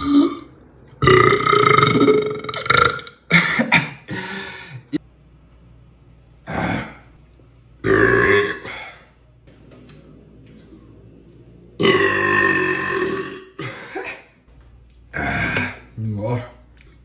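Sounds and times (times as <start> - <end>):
man burping loudly: 0.0 - 4.3, 6.5 - 7.1, 7.8 - 9.0, 11.8 - 14.3, 15.1 - 16.1.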